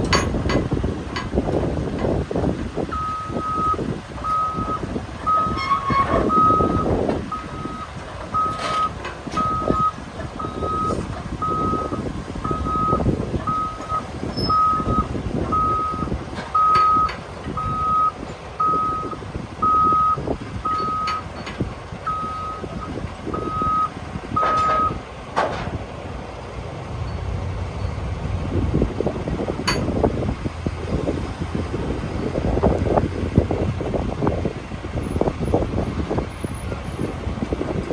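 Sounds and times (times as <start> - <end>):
diesel machine rumbling: 0.0 - 37.9
backup alarm beeping: 2.9 - 21.3, 22.1 - 25.0.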